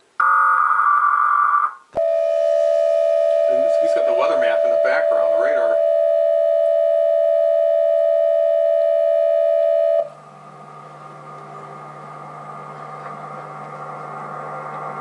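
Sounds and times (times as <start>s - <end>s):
low hum: 0.0s - 15.0s
synthesizer drone: 0.0s - 15.0s
electronic alert tone: 0.2s - 10.2s.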